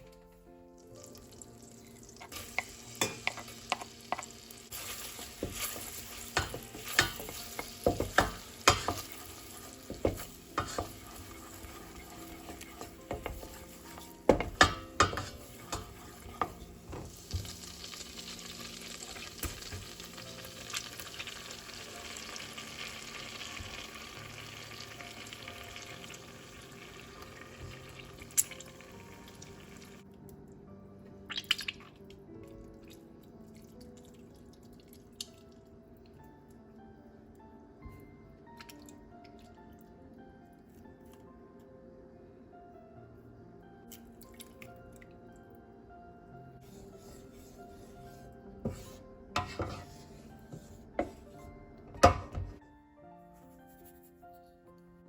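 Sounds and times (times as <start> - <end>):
garlic sizzling in butter: 1.0 - 30.0, 48.6 - 51.4
utensil knocking against pan: 5.4 - 9.1, 9.9 - 11.1, 12.4 - 17.5.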